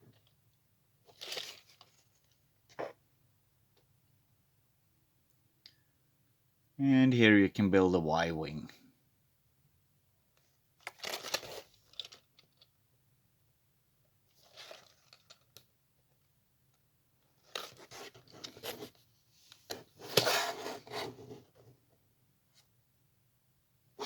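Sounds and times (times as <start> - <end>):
rustling and scraping of packaging: 1.1 - 2.4, 10.8 - 12.4, 14.3 - 15.5, 17.4 - 21.8.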